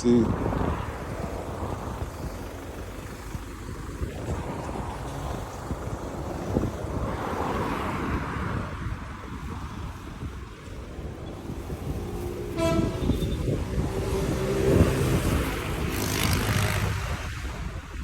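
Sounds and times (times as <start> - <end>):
road traffic passing: 0.0 - 18.0
vehicle passing by: 0.1 - 18.0
vehicle horn toot: 12.5 - 13.6.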